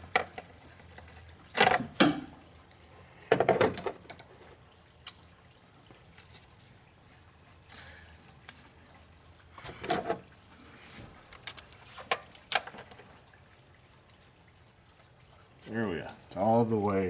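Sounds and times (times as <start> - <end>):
plastic valve scraping and creaking: 0.1 - 2.0, 9.6 - 10.3.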